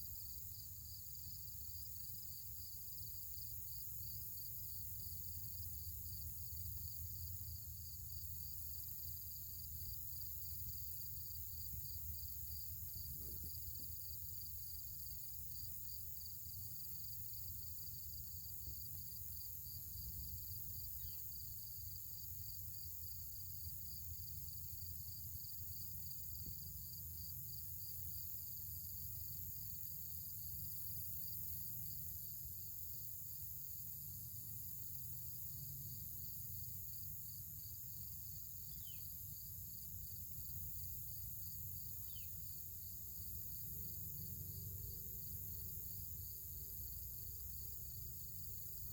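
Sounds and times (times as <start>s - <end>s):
insects trilling: 0.1s - 27.9s, 33.7s - 48.9s.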